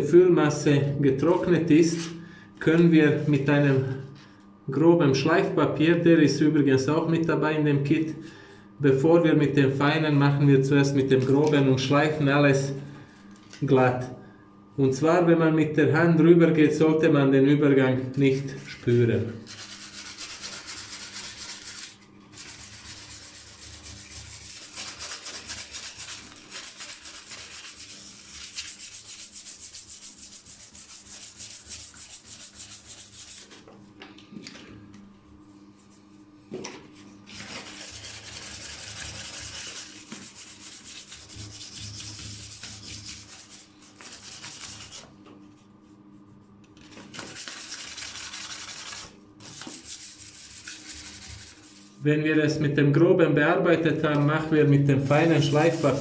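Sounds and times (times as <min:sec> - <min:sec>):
sandpaper rubbing by hand: 0:19.4 - 0:33.6, 0:37.3 - 0:45.1, 0:46.9 - 0:52.0, 0:55.0 - 0:56.0.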